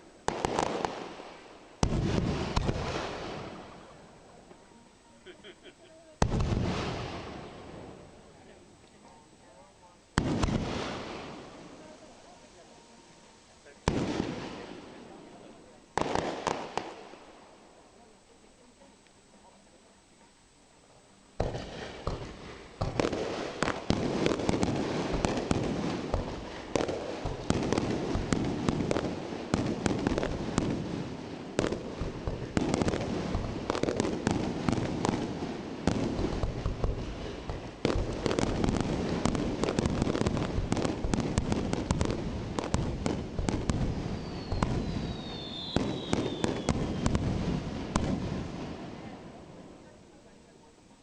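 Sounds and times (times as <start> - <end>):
fireworks bursting and crackling: 0.0 - 51.0
fireworks falling whistles: 21.4 - 48.3.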